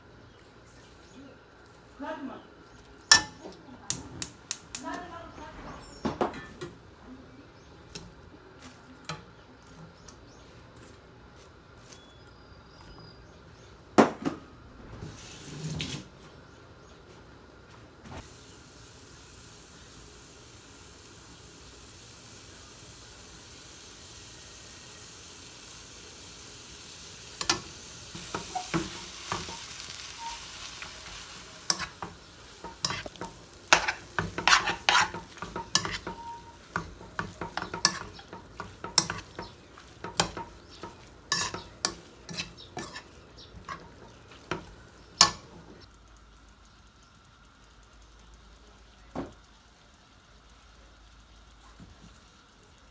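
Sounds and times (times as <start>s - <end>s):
food sizzling in a pan: 0.0s - 10.7s, 15.0s - 16.6s, 18.1s - 52.9s
utensil scraping and knocking pan: 27.4s - 45.8s.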